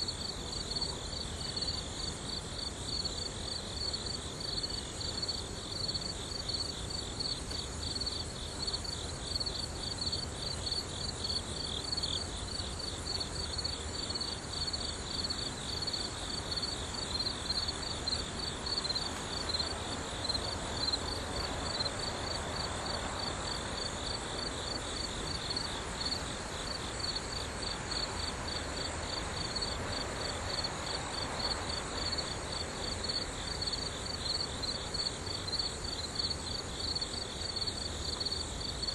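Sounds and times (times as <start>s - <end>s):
insects chirping in a trill: 0.0s - 38.9s.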